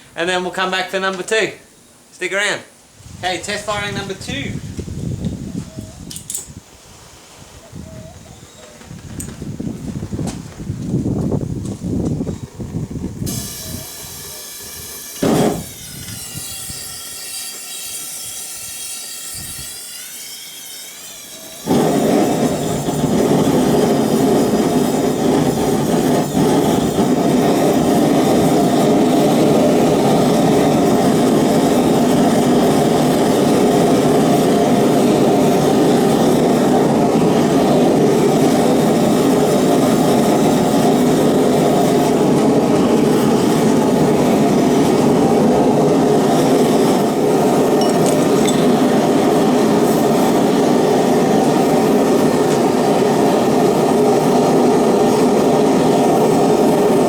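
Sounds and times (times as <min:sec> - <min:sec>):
gas burner flame rushing: 0:08.9 - 0:57.0
faint whistling gas hiss: 0:13.3 - 0:27.2.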